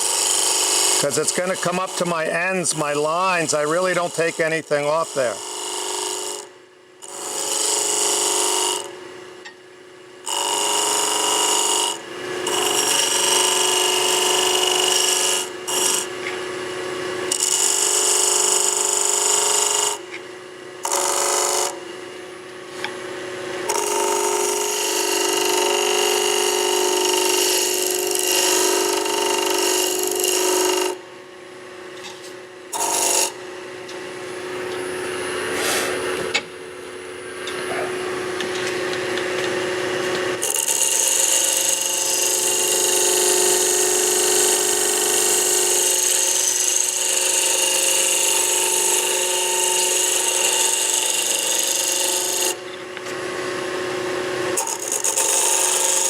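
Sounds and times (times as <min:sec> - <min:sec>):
chisel cutting wood on lathe: 0:00.0 - 0:08.9, 0:10.2 - 0:16.1, 0:17.3 - 0:20.0, 0:20.8 - 0:21.8, 0:23.7 - 0:31.0, 0:32.7 - 0:33.4, 0:40.4 - 0:52.6, 0:54.6 - 0:56.0.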